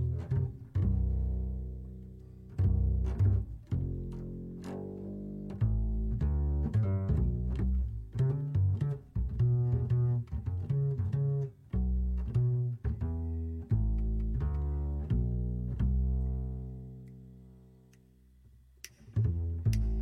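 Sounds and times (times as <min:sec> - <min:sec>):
low-pitched instrumental notes: 0:18.9 - 0:20.0.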